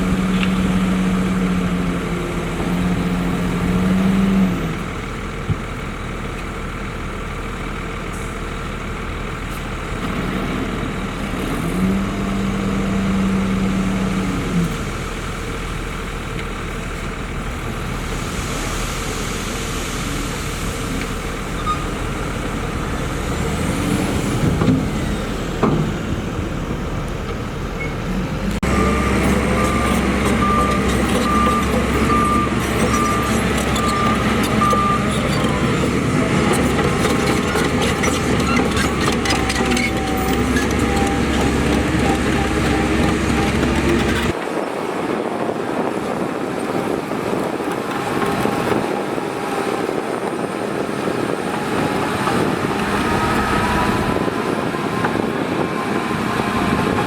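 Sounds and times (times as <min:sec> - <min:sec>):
diesel earthmoving machinery running: 0:00.0 - 0:57.0
louder engine: 0:28.1 - 0:44.4
reversing alarm beeping: 0:28.7 - 0:36.3.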